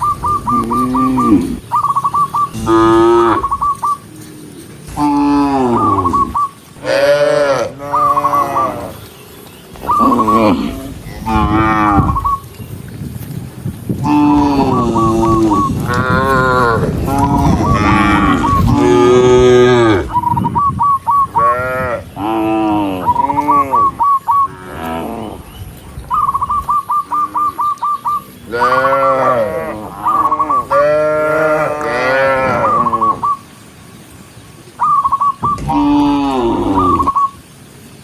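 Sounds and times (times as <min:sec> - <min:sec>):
cows mooing: 0:00.4 - 0:01.7, 0:02.5 - 0:09.1, 0:09.8 - 0:12.4, 0:14.0 - 0:20.2, 0:21.3 - 0:25.5, 0:28.5 - 0:33.2, 0:35.5 - 0:37.2.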